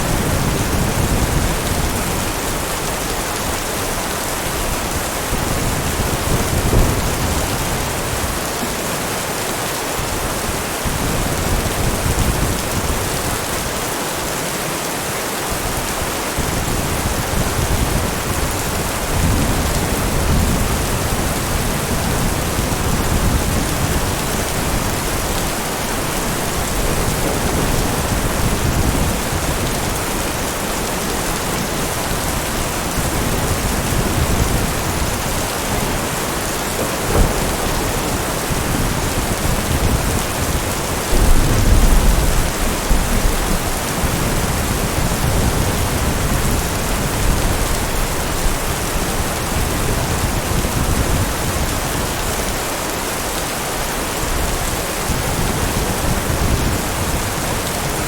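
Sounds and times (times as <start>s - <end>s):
heavy rain: 0.0s - 58.0s
thunder rumble: 4.2s - 9.0s, 16.4s - 52.0s
sharp thunder crack: 33.9s - 44.3s.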